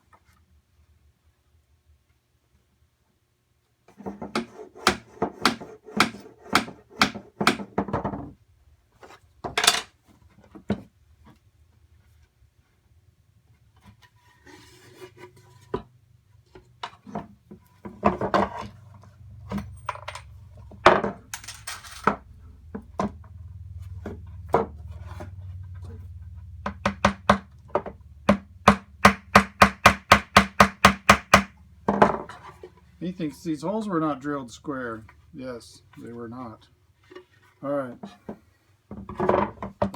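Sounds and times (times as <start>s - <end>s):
knocks and wood handling: 3.9s - 8.4s, 16.5s - 21.3s, 22.1s - 26.0s, 26.6s - 32.8s, 37.0s - 39.9s.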